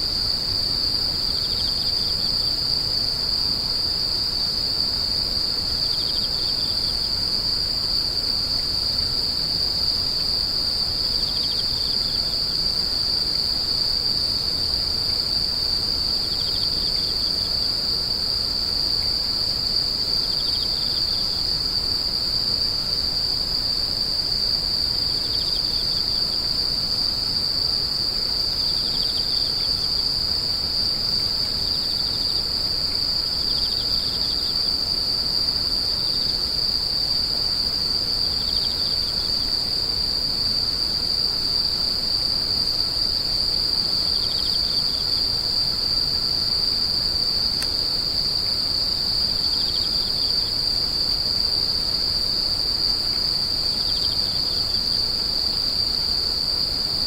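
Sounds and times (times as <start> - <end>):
lower insect chirping: 0.0 - 57.0
insects shrill trill: 22.8 - 56.6.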